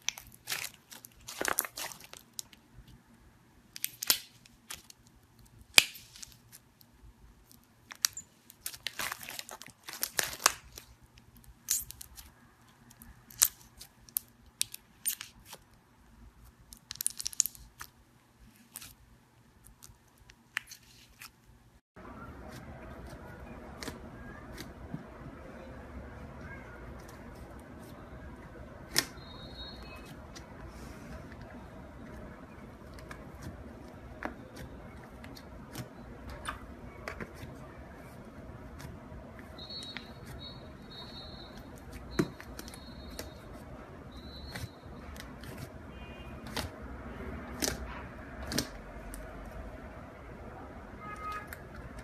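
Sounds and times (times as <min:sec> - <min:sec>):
crackles and rustling of handling: 0:00.0 - 0:52.0.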